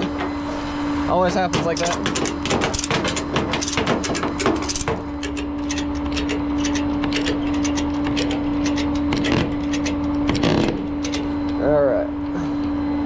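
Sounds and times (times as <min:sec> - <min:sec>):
engine idling: 0:01.3 - 0:11.6
sharp ticks: 0:01.6 - 0:11.4.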